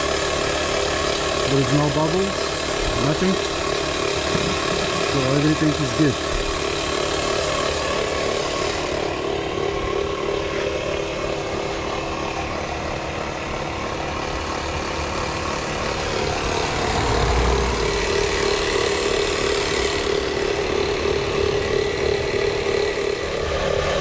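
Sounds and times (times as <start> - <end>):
motor humming: 0.0 - 24.0
low rumble: 16.2 - 18.8.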